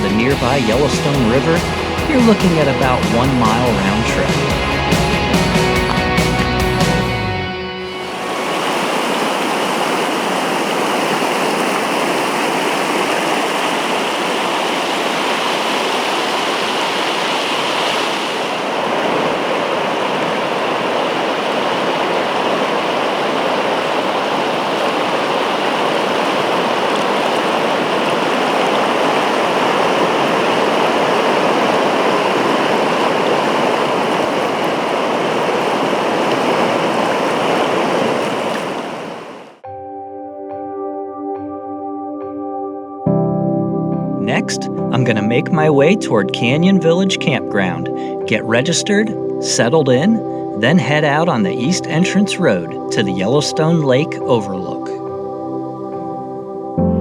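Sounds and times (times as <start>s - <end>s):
waterfall roaring: 0.0s - 7.1s, 7.8s - 39.6s.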